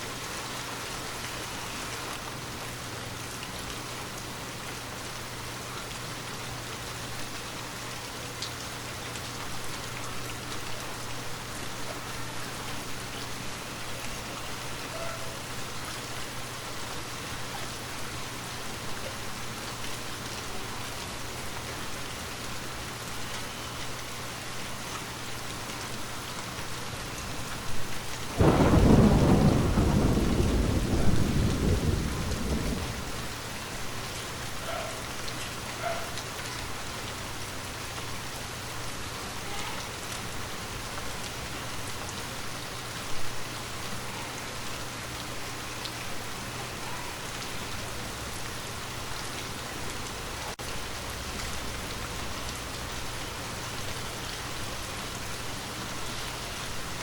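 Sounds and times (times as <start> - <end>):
steady rain falling: 0.0 - 57.0
thunderclap rumbling: 28.3 - 33.3.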